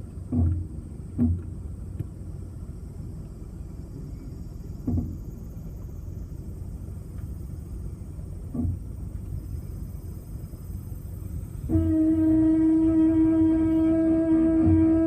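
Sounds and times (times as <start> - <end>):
car engine rumbling: 0.0 - 15.0
low-pitched knock: 4.8 - 5.2.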